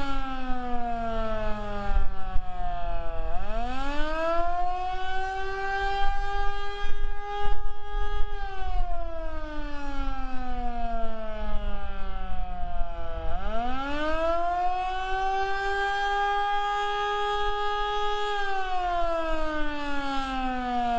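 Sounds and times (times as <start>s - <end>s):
wind rumble on microphone: 0.0s - 9.7s
warning siren wailing: 0.0s - 20.9s.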